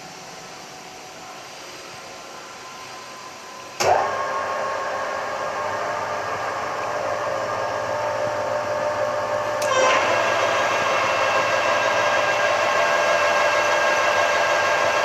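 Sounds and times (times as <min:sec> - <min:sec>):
lathe motor humming: 0:03.8 - 0:15.0.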